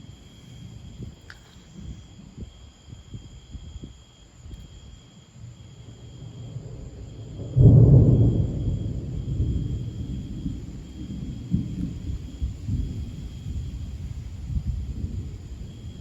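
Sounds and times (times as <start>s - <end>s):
thunder clap and rumble: 5.8s - 16.0s.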